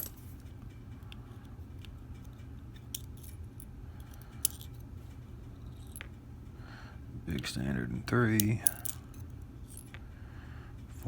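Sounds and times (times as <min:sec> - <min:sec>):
tweezers clicking on lock parts: 0:08.4 - 0:10.0.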